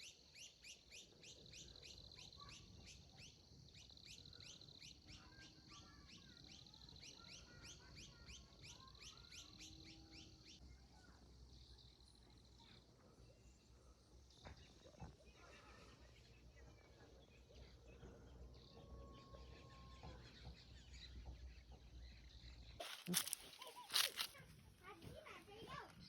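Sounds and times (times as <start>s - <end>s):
soft bird chirps: 0.0s - 24.4s
bird song with downward-sliding notes: 14.3s - 23.9s.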